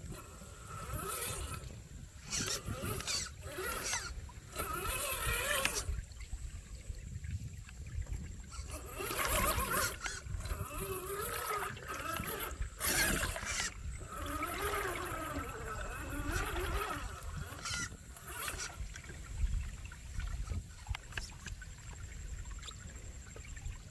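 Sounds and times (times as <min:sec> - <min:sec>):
toy car motor whining: 0:00.0 - 0:06.1, 0:08.4 - 0:19.5.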